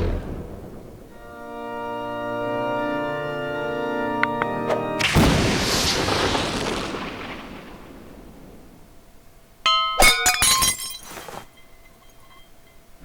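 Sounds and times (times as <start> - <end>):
cartoon crash: 5.0 - 8.8
bright ringing clinks: 9.7 - 12.9.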